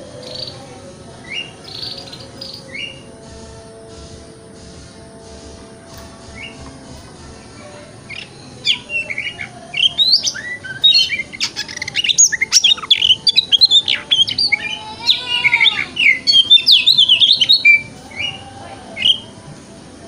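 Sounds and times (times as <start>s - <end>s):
bird singing whistles and chirps: 1.2s - 3.1s, 6.3s - 6.6s, 8.1s - 18.4s, 19.0s - 19.4s.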